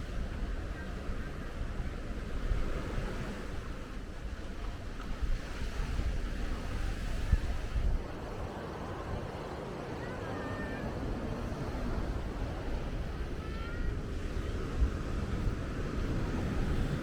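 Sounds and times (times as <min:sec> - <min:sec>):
wind buffeting microphone: 0:00.0 - 0:17.0
ocean surf breaking: 0:08.0 - 0:17.0.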